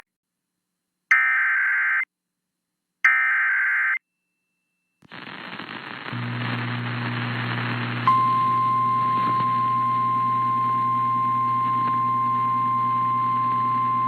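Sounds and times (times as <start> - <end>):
radio static with low hum: 5.0 - 14.0.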